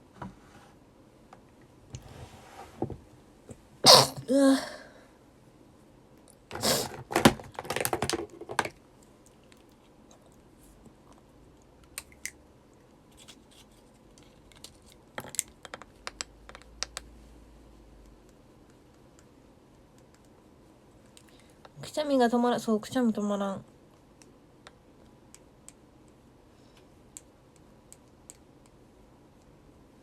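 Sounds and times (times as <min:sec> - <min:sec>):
woman sneezing: 0:03.8 - 0:04.9.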